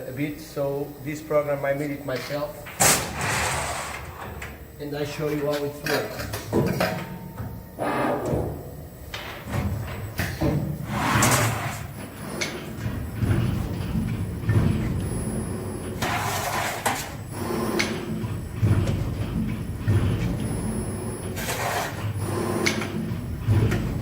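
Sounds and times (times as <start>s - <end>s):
machine hissing: 10.3s - 12.7s
machine knocks: 17.7s - 24.0s.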